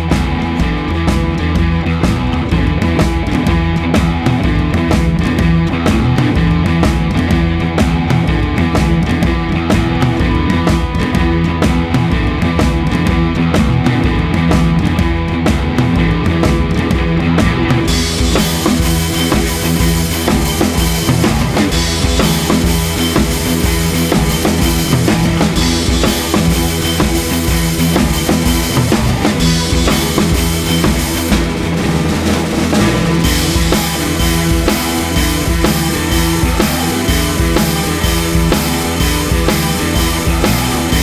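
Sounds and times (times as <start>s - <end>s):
rock music with drum beat: 0.0s - 41.0s
cymbals: 17.9s - 41.0s.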